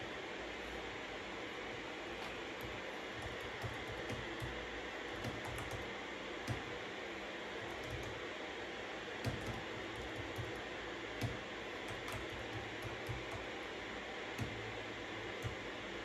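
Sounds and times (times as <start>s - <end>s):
computer keyboard keystrokes: 2.2s - 6.8s, 7.6s - 8.2s, 9.2s - 13.7s, 14.3s - 15.7s.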